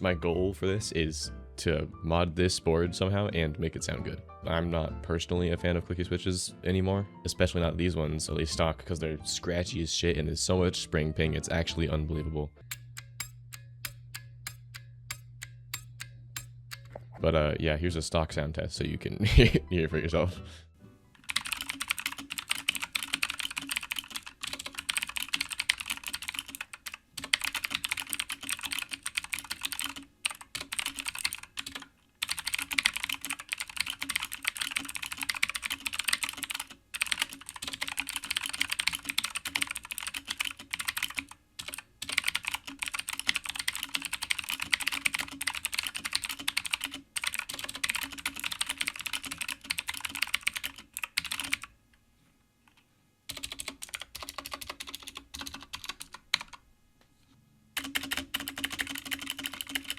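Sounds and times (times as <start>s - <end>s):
fast mechanical keyboard typing: 21.2s - 51.7s, 53.3s - 56.6s, 57.8s - 59.9s.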